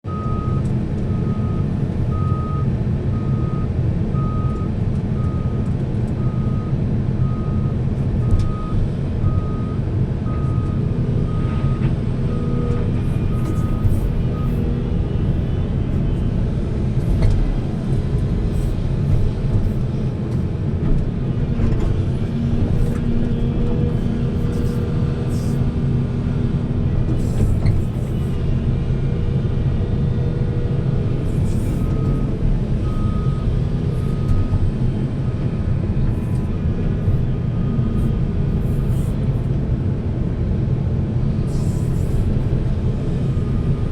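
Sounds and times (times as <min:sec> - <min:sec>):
heavy diesel machinery running: 0:00.0 - 0:43.9
reversing alarm beeping: 0:00.1 - 0:05.6, 0:06.2 - 0:14.7, 0:31.4 - 0:34.8.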